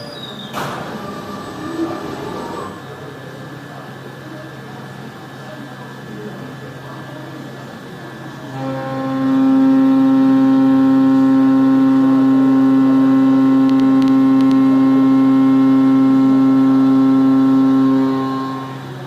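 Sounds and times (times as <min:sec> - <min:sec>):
milling cutter whine: 0:00.0 - 0:03.3, 0:08.5 - 0:19.0
low machine hum: 0:00.0 - 0:19.0.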